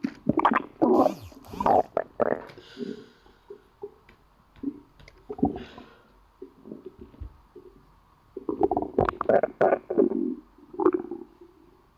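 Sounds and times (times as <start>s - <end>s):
stomach growling: 0.3s - 2.6s, 8.4s - 11.6s.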